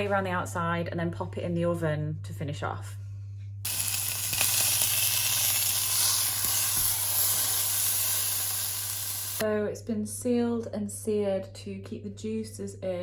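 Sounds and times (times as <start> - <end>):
meat sizzling in a frying pan: 3.7 - 9.4.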